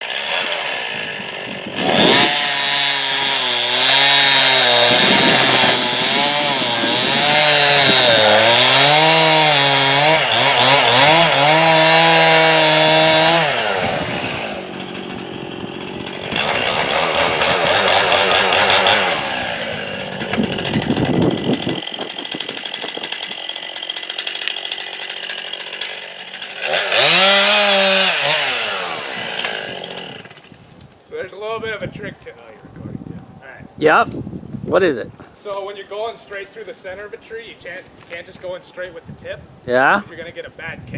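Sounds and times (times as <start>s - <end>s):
chainsaw cutting wood: 0.0s - 30.8s.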